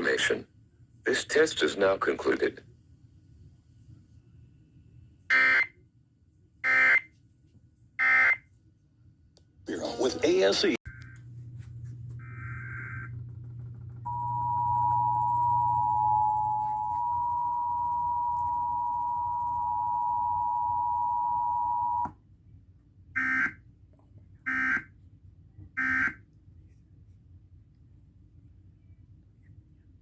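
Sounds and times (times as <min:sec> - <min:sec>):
two-tone attention signal: 0:14.1 - 0:22.1.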